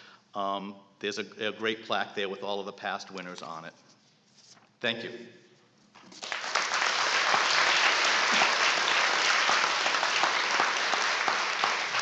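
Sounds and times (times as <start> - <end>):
audience applauding: 6.2 - 12.0.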